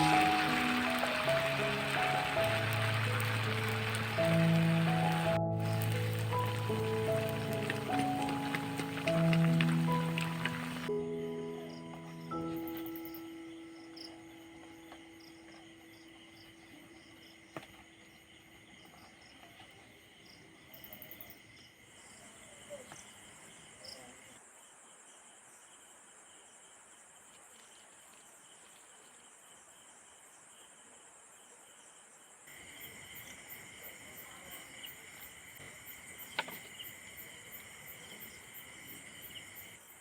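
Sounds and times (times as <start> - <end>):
insects chirring: 0.0 - 40.0.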